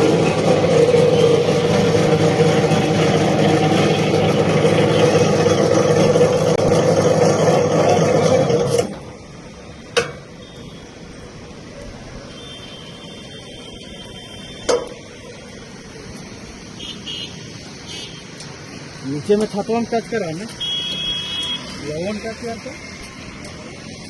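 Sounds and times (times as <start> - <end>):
electric hoist motor running: 0.0 - 9.1.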